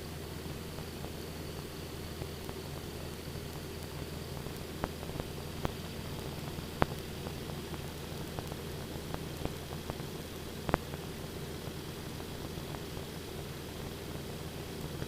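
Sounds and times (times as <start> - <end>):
cockpit hiss and low drone: 0.0 - 15.0
sharp clicks and crackles: 0.7 - 11.1.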